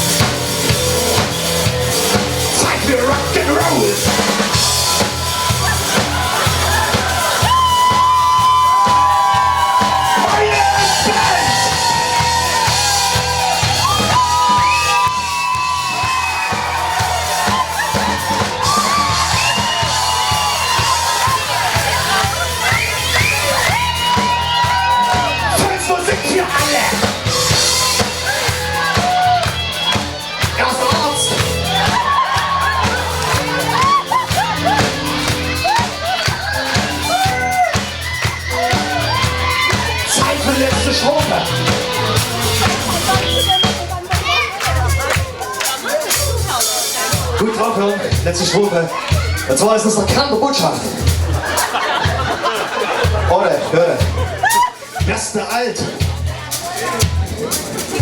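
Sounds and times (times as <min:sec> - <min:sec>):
sliding lead melody: 0:00.0 - 0:45.2
bass line: 0:00.0 - 0:58.0
crowd shouting: 0:00.0 - 0:58.0
drums steady beat: 0:00.0 - 0:58.0
live band music: 0:00.0 - 0:58.0.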